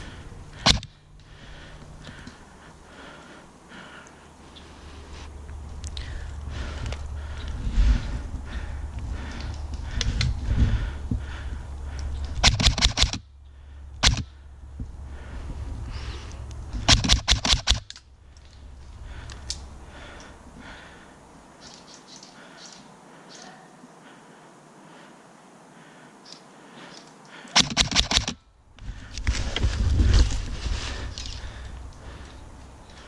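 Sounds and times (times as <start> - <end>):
airsoft guns firing bursts: 12.4 - 13.2, 16.8 - 17.8, 27.6 - 28.4
rustling on microphone: 28.9 - 33.0.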